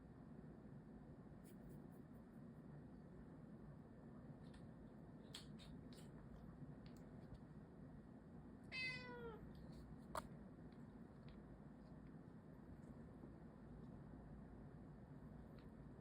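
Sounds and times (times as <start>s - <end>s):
cat meowing: 8.7s - 9.4s.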